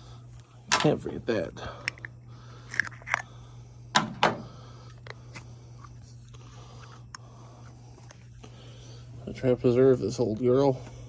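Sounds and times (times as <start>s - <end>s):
steady low hum: 0.0s - 11.0s.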